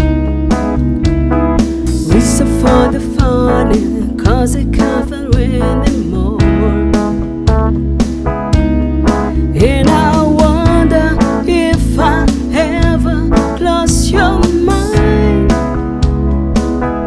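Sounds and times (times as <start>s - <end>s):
instrumental backing with beat: 0.0s - 17.0s
person singing: 1.9s - 7.4s, 9.4s - 16.0s.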